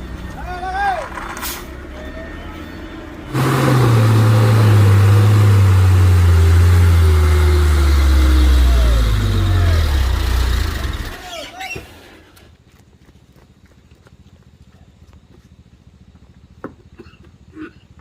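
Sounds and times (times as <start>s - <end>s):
truck diesel engine labouring: 0.0s - 12.3s.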